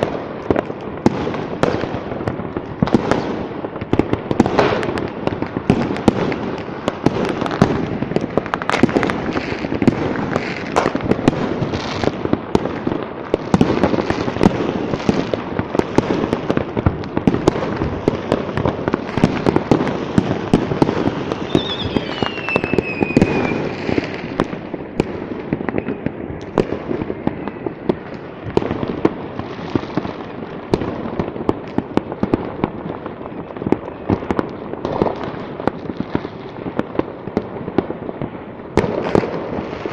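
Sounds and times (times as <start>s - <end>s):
fireworks and firecrackers banging: 0.0s - 39.9s
falling firework whistle: 20.8s - 24.4s, 25.5s - 28.1s.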